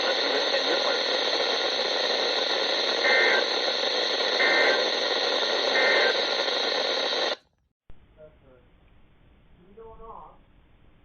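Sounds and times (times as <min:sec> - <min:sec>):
radio static hissing: 0:00.0 - 0:07.4
two-tone data bursts: 0:00.0 - 0:07.4.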